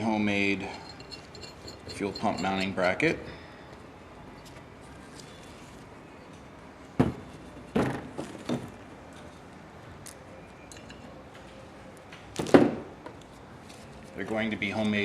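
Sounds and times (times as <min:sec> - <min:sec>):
parts knocking on workbench: 0:07.0 - 0:07.2.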